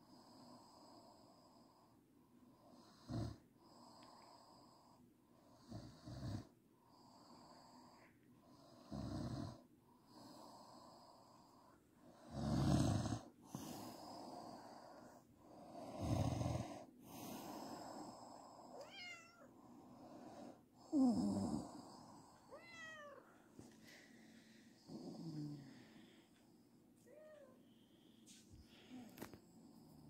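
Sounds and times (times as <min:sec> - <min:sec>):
quiet breathing: 0:00.0 - 0:30.0
woman snoring: 0:02.7 - 0:04.5, 0:05.6 - 0:06.5, 0:08.6 - 0:11.6, 0:12.2 - 0:18.8, 0:19.9 - 0:22.6, 0:24.8 - 0:26.2.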